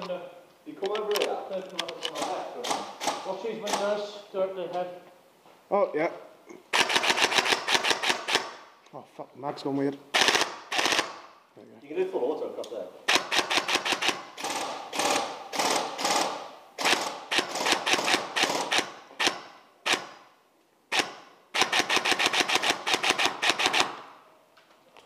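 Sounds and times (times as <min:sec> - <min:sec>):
airsoft rifle automatic bursts: 0:06.7 - 0:08.7, 0:10.1 - 0:11.3, 0:13.1 - 0:20.2, 0:20.9 - 0:24.1.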